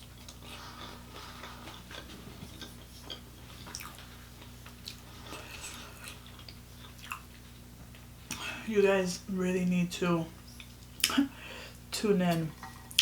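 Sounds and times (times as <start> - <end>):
mouth chewing: 0.0 - 7.3.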